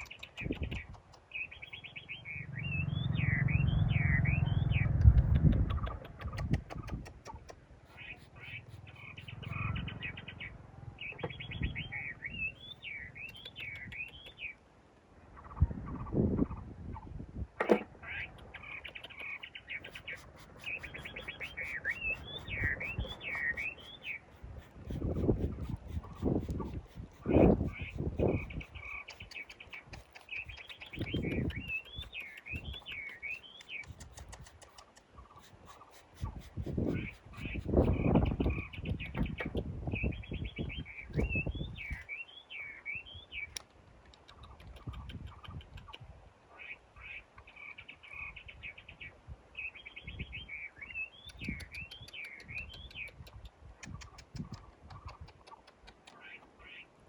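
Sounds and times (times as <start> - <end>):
songbird singing: 0.0 - 57.0
low rumble: 1.8 - 6.8, 8.9 - 13.2.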